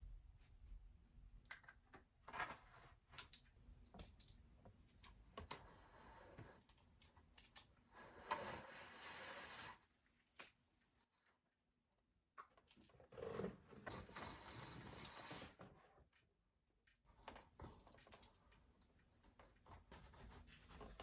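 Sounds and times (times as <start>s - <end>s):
small objects clicking and tapping: 1.4s - 2.1s, 3.1s - 5.5s.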